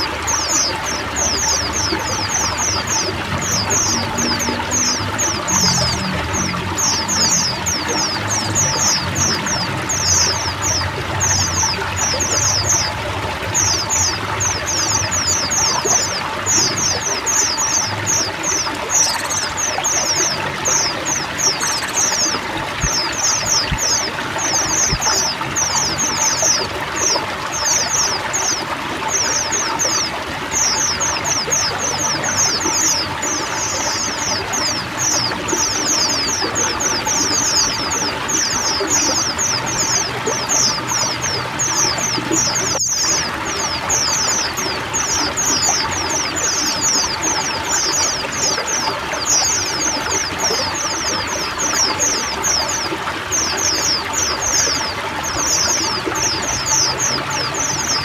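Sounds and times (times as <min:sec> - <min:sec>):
water trickling and pouring: 0:00.0 - 0:58.0.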